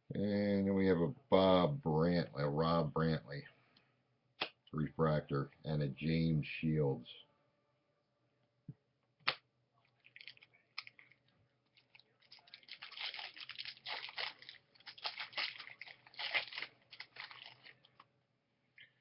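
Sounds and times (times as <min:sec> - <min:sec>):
foil wrapper crinkling: 0:10.0 - 0:18.0.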